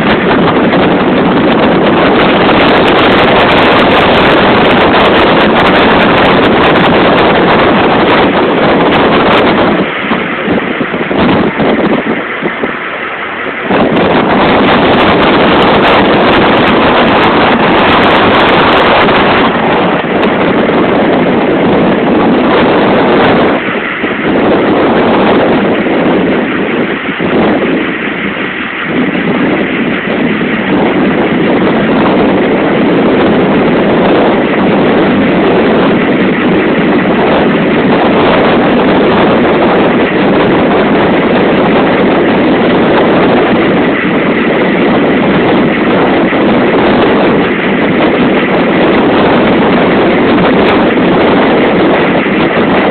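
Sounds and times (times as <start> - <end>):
boat motor running: 0.0 - 52.9
wind noise on microphone: 0.0 - 52.9.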